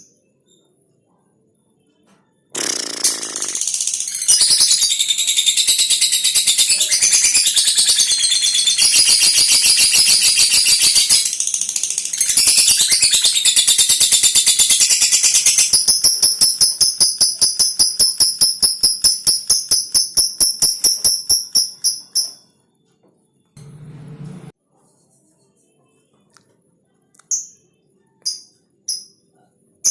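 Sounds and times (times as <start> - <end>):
lovebird chattering: 2.6 - 22.4.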